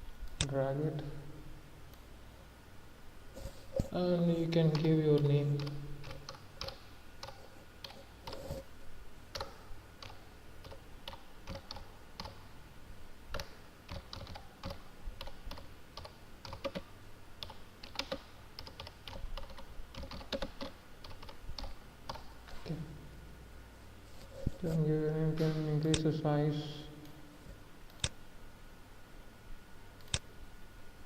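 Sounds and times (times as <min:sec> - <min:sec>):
computer keyboard typing: 0:04.5 - 0:08.6, 0:09.3 - 0:12.4, 0:13.3 - 0:22.3.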